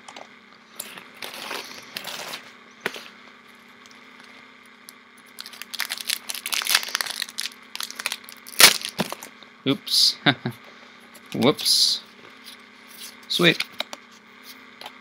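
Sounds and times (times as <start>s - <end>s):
foil wrapper crinkling: 5.2s - 9.3s.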